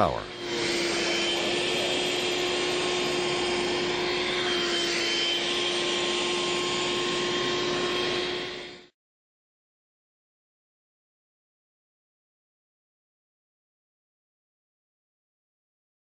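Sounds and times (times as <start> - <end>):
vacuum cleaner running: 0.0 - 9.0.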